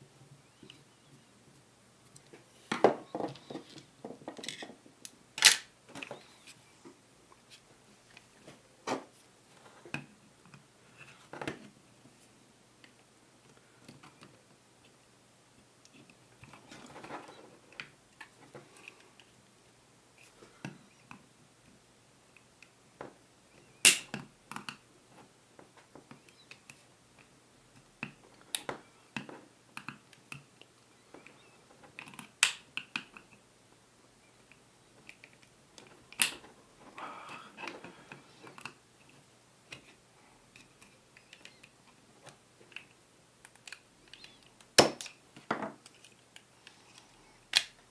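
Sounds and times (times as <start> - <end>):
pistol parts clicking: 5.4 - 5.7, 47.5 - 47.8.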